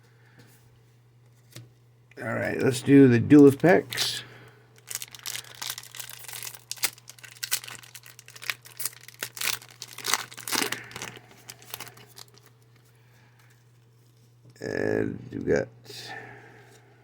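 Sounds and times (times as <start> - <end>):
foil wrapper tearing and crinkling: 4.8 - 12.8.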